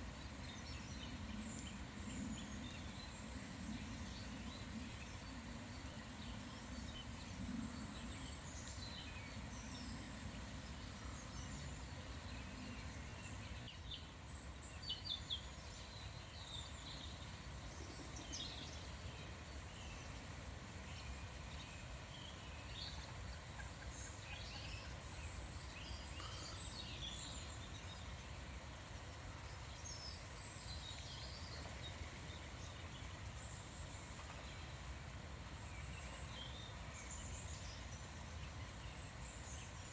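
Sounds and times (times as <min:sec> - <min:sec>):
low background noise: 0:00.0 - 0:39.9.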